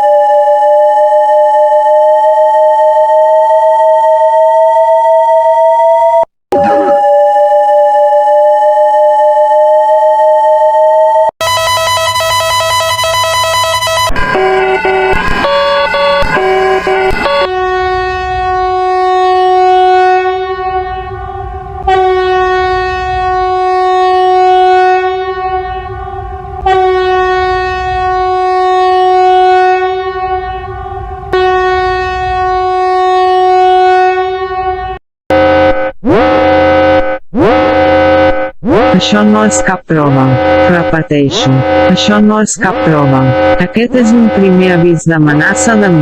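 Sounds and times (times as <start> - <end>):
emergency warning siren: 0.0 - 46.0
changing alert tones: 6.5 - 8.5.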